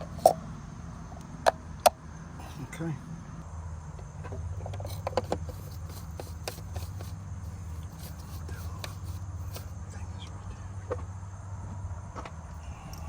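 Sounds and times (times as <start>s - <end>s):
parts clicking and tapping: 0.0s - 0.4s, 4.3s - 9.8s
steady low hum: 0.0s - 13.0s.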